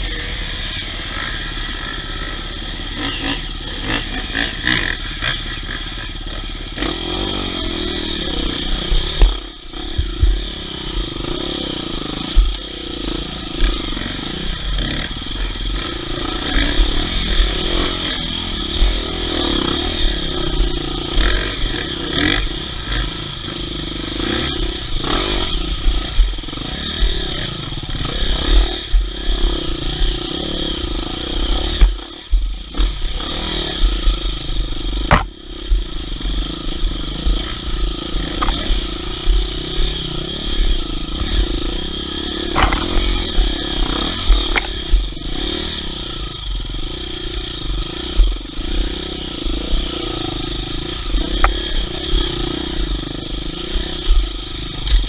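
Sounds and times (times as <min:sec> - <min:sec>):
motorcycle engine running: 0:00.0 - 0:55.0
motorcycle clattering: 0:35.0 - 0:35.8, 0:42.5 - 0:45.1
sharp knocks: 0:35.1 - 0:35.4.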